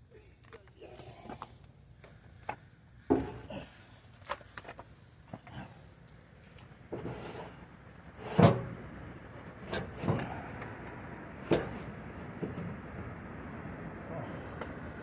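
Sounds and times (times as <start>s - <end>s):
hard knocks and clunks: 3.1s - 3.5s.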